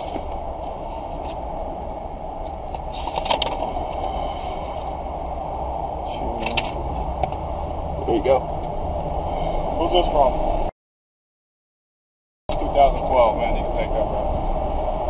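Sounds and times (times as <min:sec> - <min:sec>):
car engine idling: 0:00.0 - 0:10.6
traffic passing: 0:00.0 - 0:10.7, 0:12.5 - 0:15.0.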